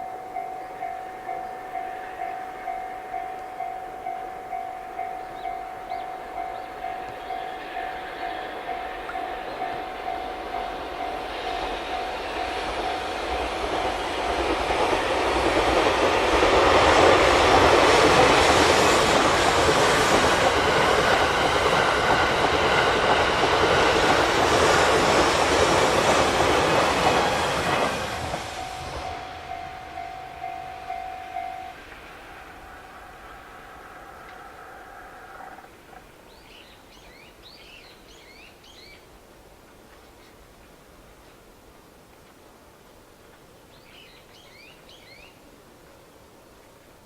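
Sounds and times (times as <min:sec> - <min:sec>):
level crossing warning bell: 0:00.0 - 0:15.0, 0:27.1 - 0:32.7
train rumble and wheel clatter: 0:00.0 - 0:46.0.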